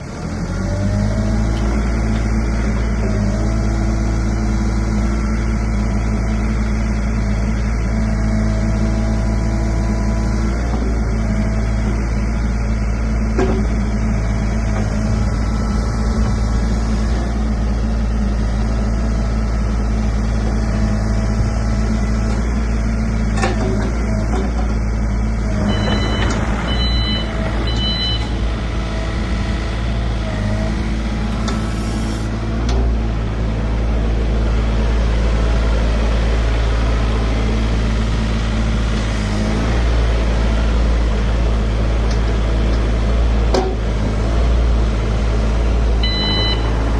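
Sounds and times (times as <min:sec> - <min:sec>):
excavator diesel engine running: 0:00.0 - 0:46.9
short high beeps: 0:46.0 - 0:46.8.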